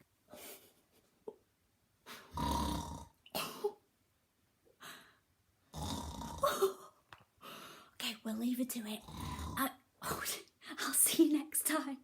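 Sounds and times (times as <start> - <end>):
person snoring: 2.1 - 3.2, 5.7 - 6.7, 9.0 - 9.7.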